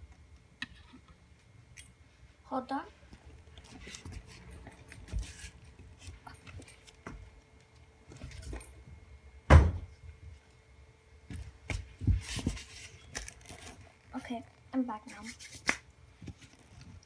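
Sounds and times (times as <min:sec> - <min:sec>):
loud short thump: 0:09.5 - 0:09.9.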